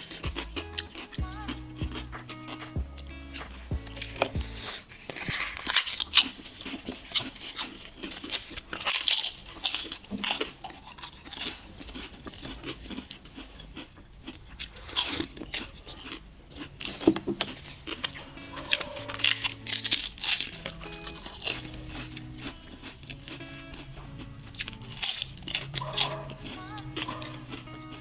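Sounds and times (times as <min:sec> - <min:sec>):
crunchy chewing: 0:00.0 - 0:28.0
crisp bites into toast: 0:03.4 - 0:13.3, 0:16.9 - 0:24.0, 0:24.6 - 0:27.6.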